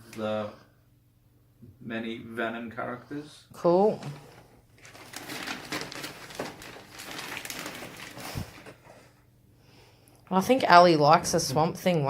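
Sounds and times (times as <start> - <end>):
cardboard and plastic packaging rustling: 4.0 - 9.2.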